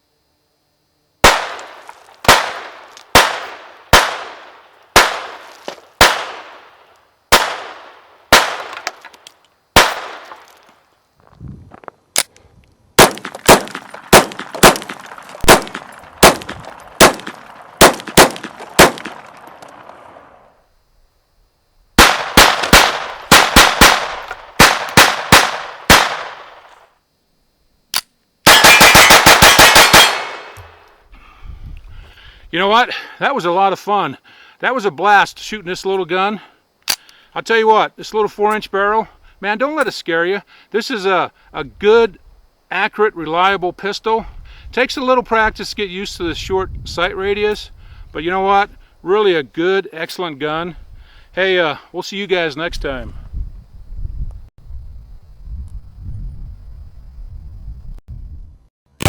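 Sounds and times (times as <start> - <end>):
pistol shots: 1.2 - 9.0, 9.8 - 10.5, 13.0 - 20.0, 22.0 - 26.7, 28.4 - 30.8.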